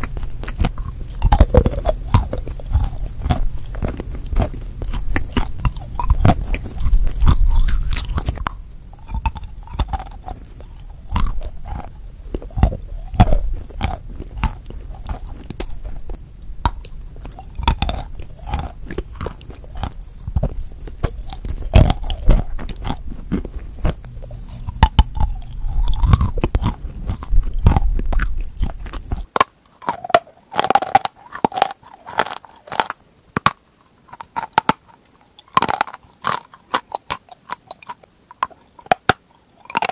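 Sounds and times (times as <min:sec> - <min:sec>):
low background rumble: 0:00.0 - 0:29.3
chalk crunching between teeth: 0:00.0 - 0:39.9.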